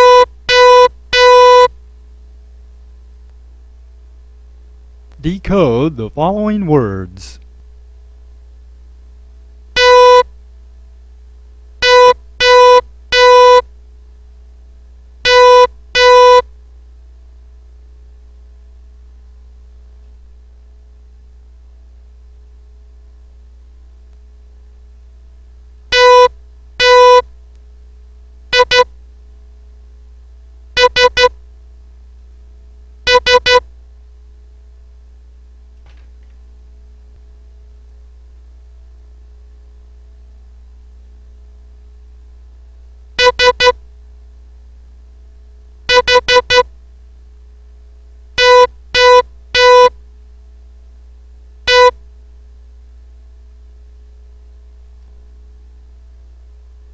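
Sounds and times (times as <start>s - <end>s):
morse code beeps: 0.0s - 1.7s, 9.8s - 10.2s, 11.8s - 13.6s, 15.3s - 16.4s, 26.0s - 27.2s, 28.6s - 28.9s, 30.8s - 31.3s, 33.1s - 33.6s, 43.2s - 43.8s, 45.9s - 46.6s, 48.4s - 49.9s, 51.7s - 51.9s.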